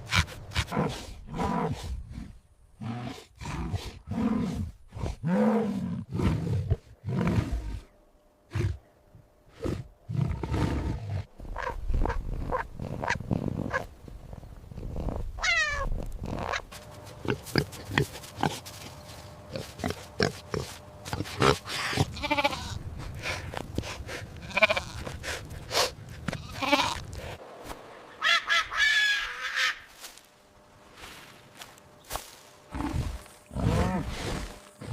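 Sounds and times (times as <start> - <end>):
farm animals crying: 15.4 - 16.6, 17.3 - 22.8, 24.4 - 25.1, 26.4 - 27.0.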